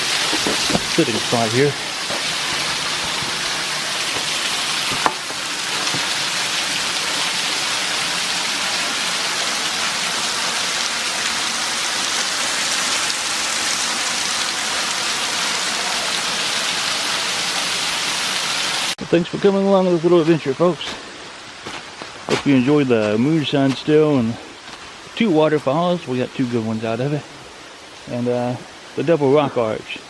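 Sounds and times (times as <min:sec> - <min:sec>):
waterfall rushing: 0:00.0 - 0:19.0.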